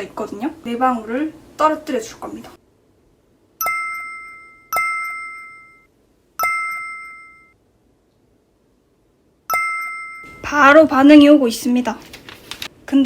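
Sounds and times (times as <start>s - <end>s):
bright ding chimes: 3.6s - 7.6s, 9.5s - 10.4s.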